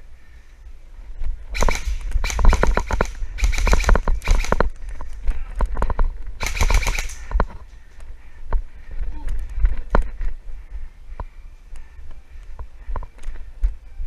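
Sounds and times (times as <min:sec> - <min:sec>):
airsoft rifle firing bursts: 0:01.6 - 0:04.7, 0:06.4 - 0:07.4.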